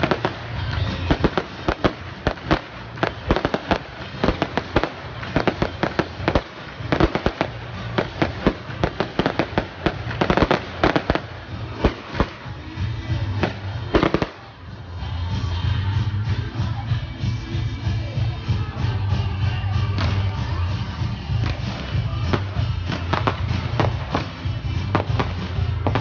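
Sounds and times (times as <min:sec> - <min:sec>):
fireworks crackling: 0:00.0 - 0:26.0.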